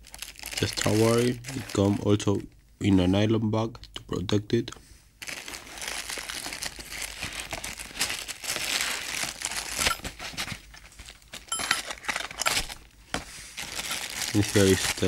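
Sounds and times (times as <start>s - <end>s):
nylon bag crinkling: 0.0s - 2.5s, 5.2s - 12.9s, 13.6s - 15.0s.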